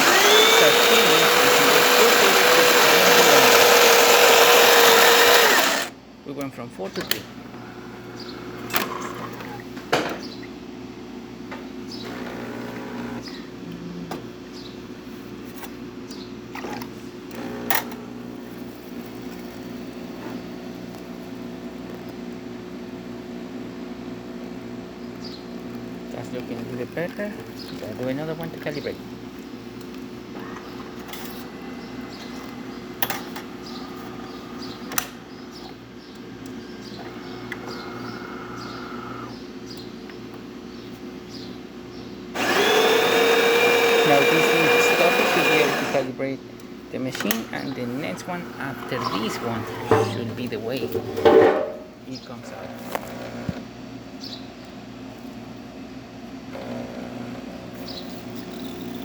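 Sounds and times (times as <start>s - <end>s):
espresso machine humming: 0.0s - 5.9s, 12.0s - 14.2s, 36.3s - 39.3s, 42.4s - 46.2s, 47.8s - 51.2s.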